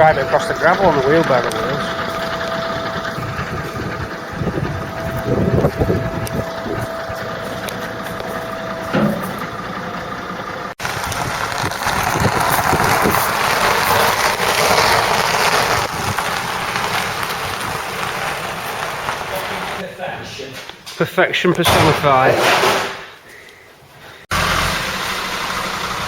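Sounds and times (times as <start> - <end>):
steady whine: 0.0 - 19.8
truck engine running: 0.0 - 19.9, 24.3 - 26.0.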